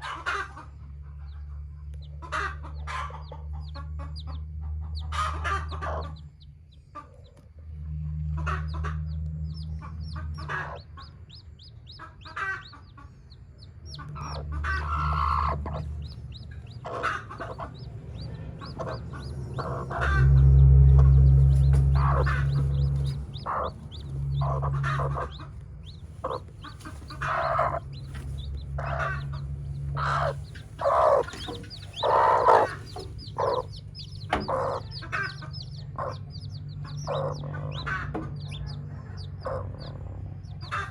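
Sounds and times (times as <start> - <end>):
hen clucking: 0.0 - 7.5, 8.1 - 40.9
chicks peeping: 0.0 - 40.9
low rumble: 7.6 - 12.0, 13.8 - 40.9.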